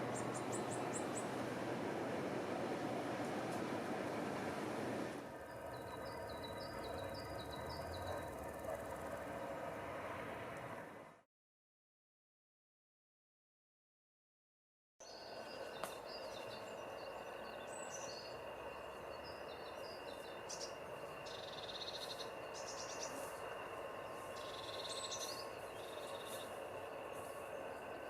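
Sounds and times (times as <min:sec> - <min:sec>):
birds singing: 0:00.0 - 0:01.7, 0:05.4 - 0:09.4, 0:15.0 - 0:28.0
ambient background noise: 0:00.0 - 0:11.2, 0:15.1 - 0:28.0.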